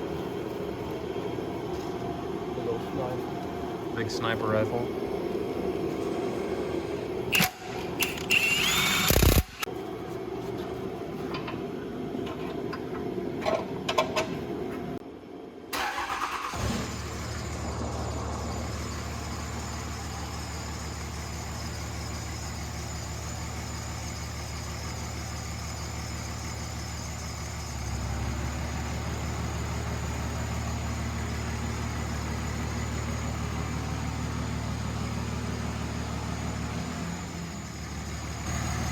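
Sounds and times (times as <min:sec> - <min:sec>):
diesel engine idling: 0:15.8 - 0:38.9.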